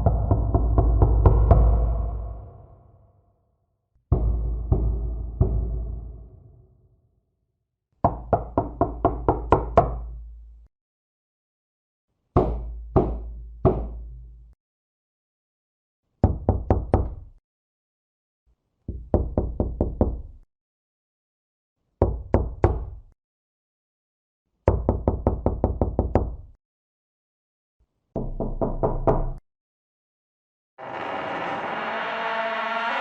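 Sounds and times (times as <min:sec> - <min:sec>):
knocking on a door: 0:08.0 - 0:10.0, 0:12.4 - 0:14.0, 0:16.2 - 0:17.3, 0:18.9 - 0:20.3, 0:22.0 - 0:23.0, 0:24.7 - 0:26.4, 0:28.2 - 0:29.4.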